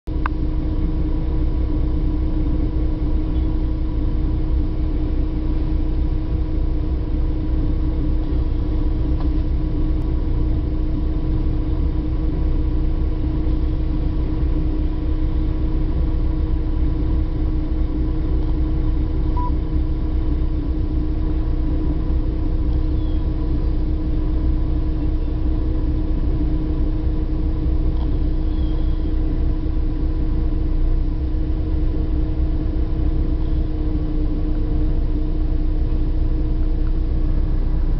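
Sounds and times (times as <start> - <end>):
bus engine and road rumble: 0.0 - 37.9
constant hum: 0.0 - 37.9.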